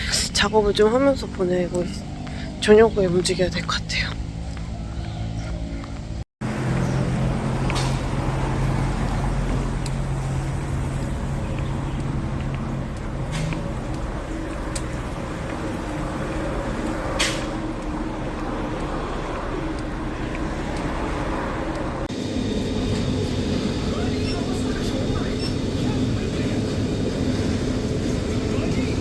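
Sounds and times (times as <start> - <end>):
street traffic: 0.0 - 29.0
vehicle engine humming: 0.0 - 29.0.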